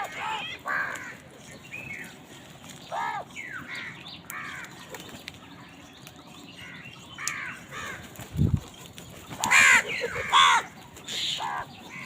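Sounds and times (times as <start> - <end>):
crows cawing: 0.0 - 1.4, 2.9 - 4.9, 6.6 - 8.2, 9.4 - 12.0.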